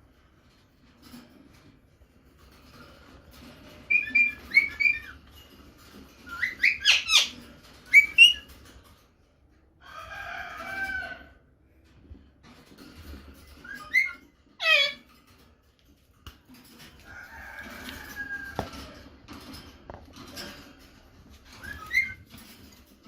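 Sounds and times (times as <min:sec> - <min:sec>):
parakeet whistled calls: 0:07.9 - 0:08.4.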